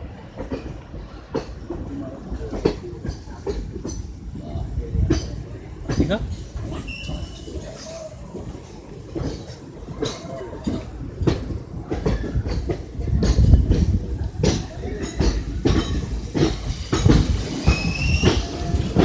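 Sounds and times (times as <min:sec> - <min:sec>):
low train rumble: 0:00.0 - 0:19.0
train wheels clattering: 0:00.1 - 0:19.0
high squeal: 0:06.8 - 0:08.1.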